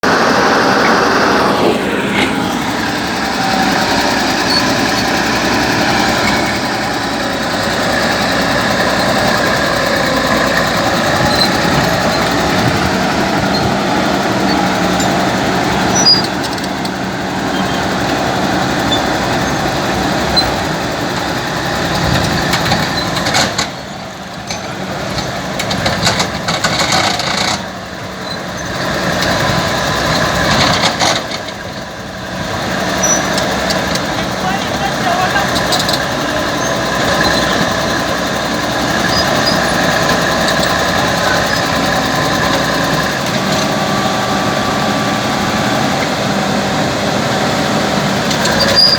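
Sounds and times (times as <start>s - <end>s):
bulldozer diesel engine running hard: 0.0s - 48.9s.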